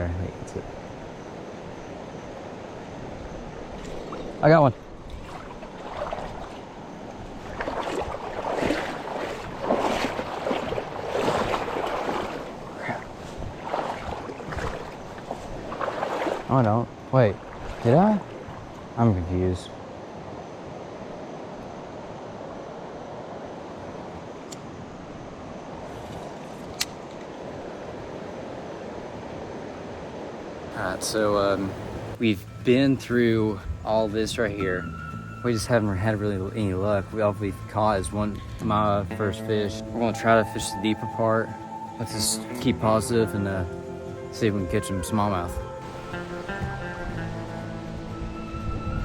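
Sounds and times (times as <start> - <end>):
river rushing: 0.0 - 49.0
water splashing: 1.6 - 19.0, 30.7 - 48.0.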